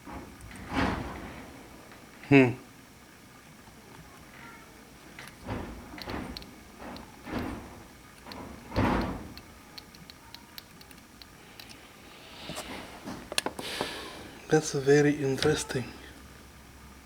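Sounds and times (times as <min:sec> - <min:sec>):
scraping rustling thumps: 0:11.9 - 0:14.6.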